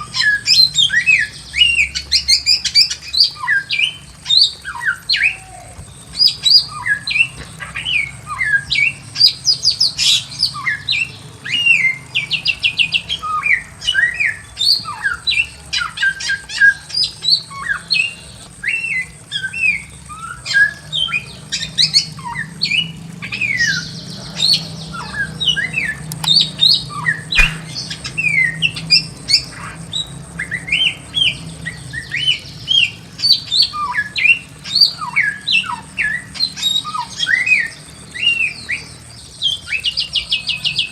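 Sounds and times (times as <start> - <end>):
bird whistling: 27.4 - 27.9.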